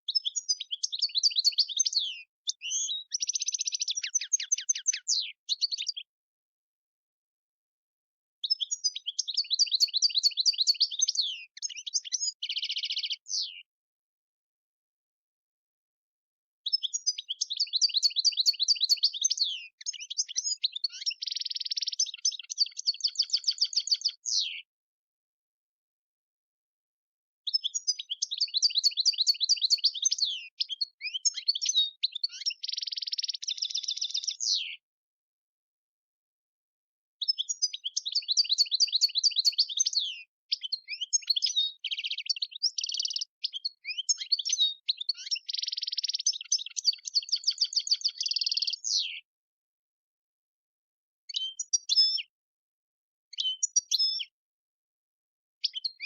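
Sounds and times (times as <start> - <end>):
goldfinch singing: 0.1 - 6.1, 8.4 - 13.6, 16.7 - 24.6, 27.5 - 34.8, 37.2 - 49.3, 51.3 - 52.4, 53.3 - 54.4, 55.6 - 56.0.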